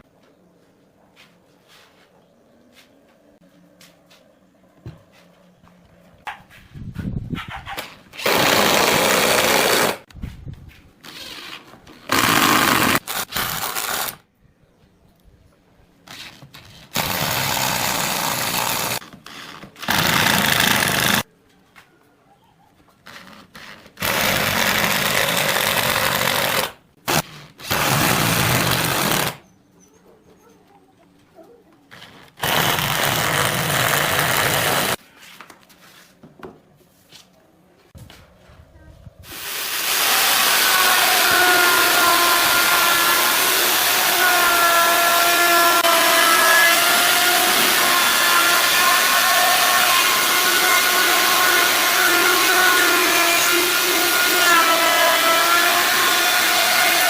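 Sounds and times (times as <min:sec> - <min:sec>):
power tool running: 0:08.2 - 0:10.1, 0:12.1 - 0:14.2, 0:16.9 - 0:19.0, 0:19.8 - 0:21.3, 0:24.0 - 0:29.4, 0:32.4 - 0:35.0, 0:39.3 - 0:57.0.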